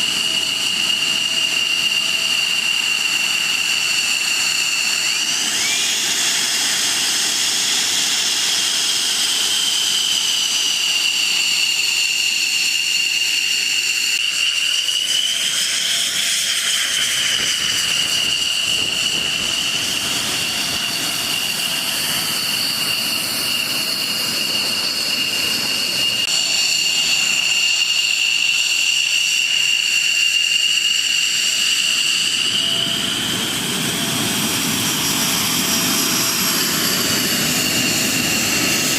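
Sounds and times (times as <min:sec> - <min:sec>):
jet engine whine: 0:00.0 - 0:38.9.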